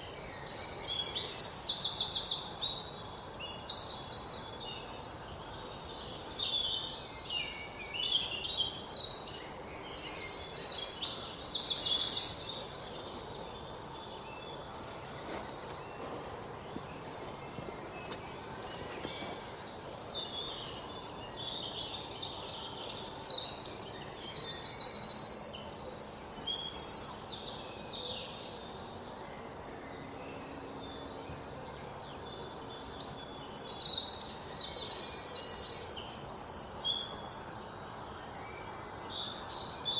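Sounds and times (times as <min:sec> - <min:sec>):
birds chirping and trilling: 0:00.0 - 0:39.9
faint outdoor background: 0:00.0 - 0:39.9.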